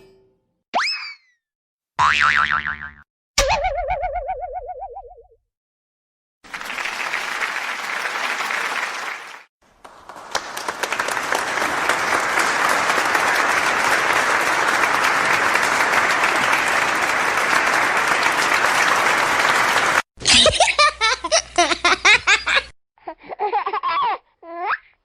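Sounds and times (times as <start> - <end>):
crowd clapping: 6.4 - 20.1.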